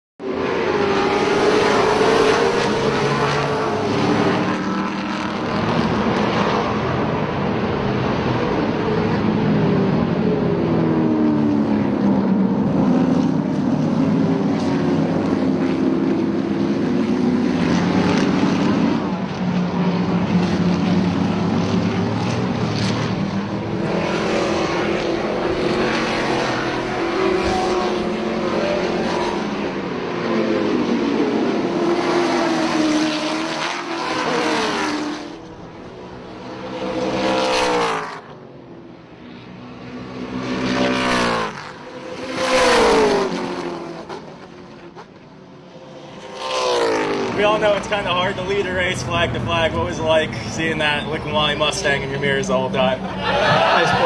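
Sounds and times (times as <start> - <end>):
race car engines: 0.2 - 54.0.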